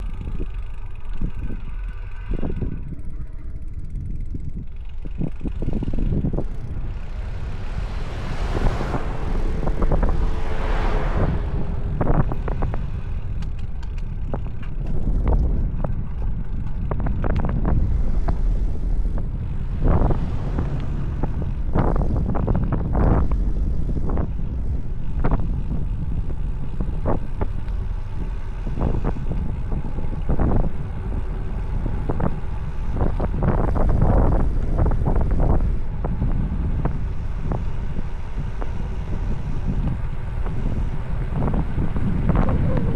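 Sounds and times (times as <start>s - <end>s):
wind buffeting microphone: 0.0s - 42.9s.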